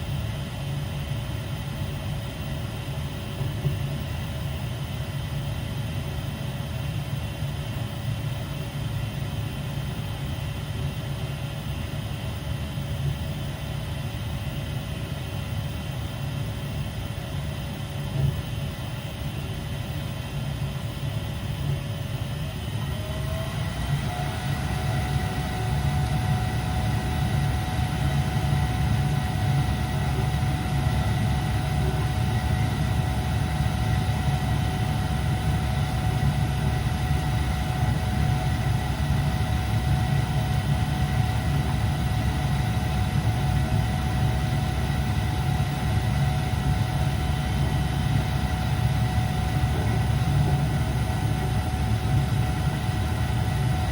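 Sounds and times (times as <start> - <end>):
furnace running with a whir: 0.0 - 53.9.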